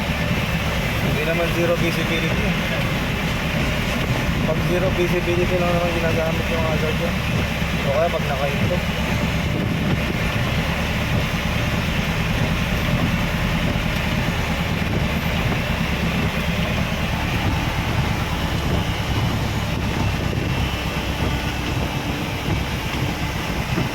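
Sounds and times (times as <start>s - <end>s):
car engine and tyres rumbling: 0.0s - 23.9s.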